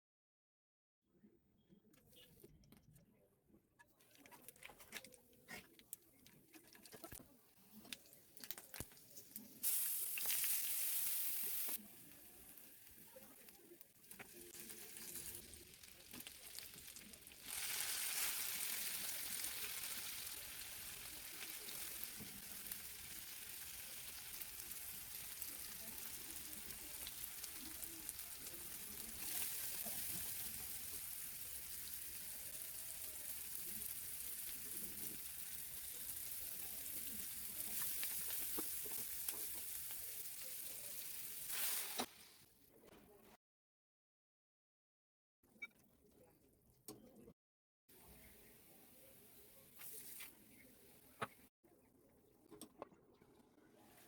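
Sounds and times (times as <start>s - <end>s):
food sizzling in oil: 9.4s - 42.4s.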